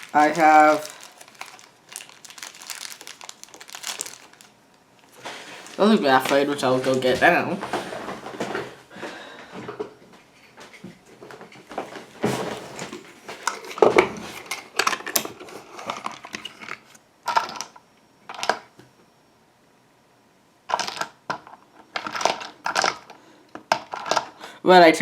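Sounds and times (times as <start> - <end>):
small hard objects clattering: 0.0 - 7.3, 20.7 - 23.1, 23.7 - 24.4.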